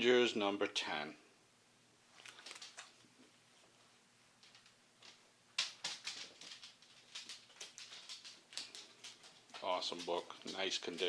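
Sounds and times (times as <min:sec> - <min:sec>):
comic book and plastic bag rustling: 0:02.1 - 0:03.7.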